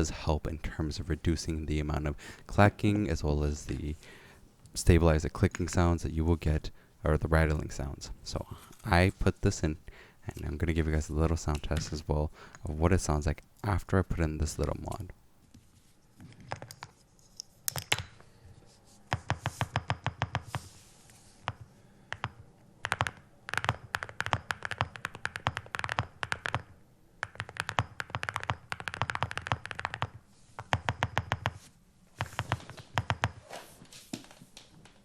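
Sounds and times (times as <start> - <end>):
typing on mechanical keyboard: 22.1 - 31.6.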